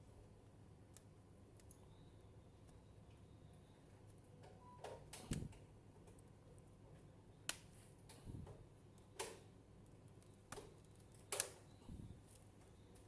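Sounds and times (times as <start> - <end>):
crisp clicks of small parts: 9.1 - 11.7.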